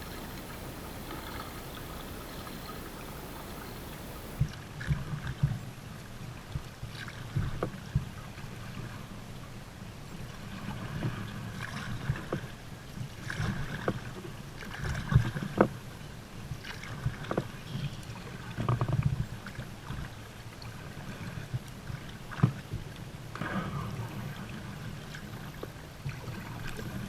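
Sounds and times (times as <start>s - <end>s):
paddle splashing into water: 0.0s - 4.4s.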